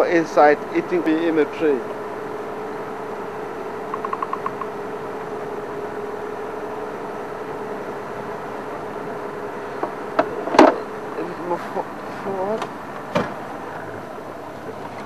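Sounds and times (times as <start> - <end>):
vehicle engine idling: 0.0 - 15.0
sharp knocks: 3.9 - 4.7.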